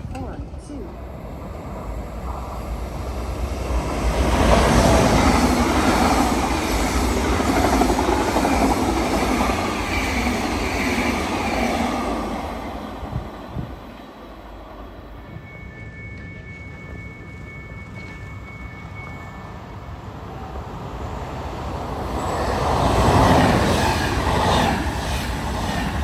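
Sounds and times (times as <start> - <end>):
train passing on tracks: 0.0 - 26.0
steady chime tones: 14.4 - 20.6.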